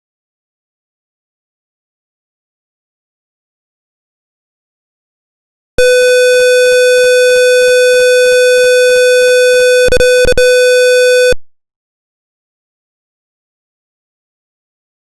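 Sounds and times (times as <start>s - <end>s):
electronic alarm buzzer tone: 5.8s - 11.4s.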